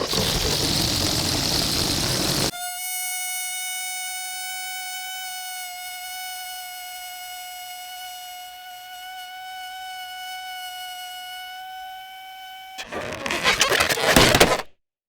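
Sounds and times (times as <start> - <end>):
balloon squealing as air escapes: 0.0 - 2.5, 12.8 - 14.6.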